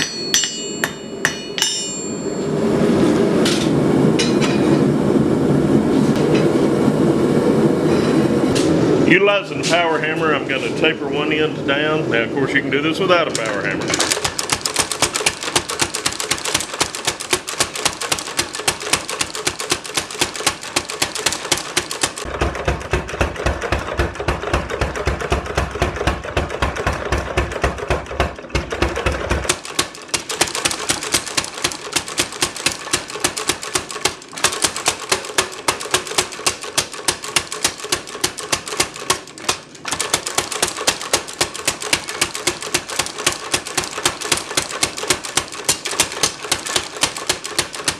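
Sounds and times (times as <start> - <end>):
power hammer striking hot steel: 0.0 - 2.4, 3.4 - 4.8, 14.3 - 47.9.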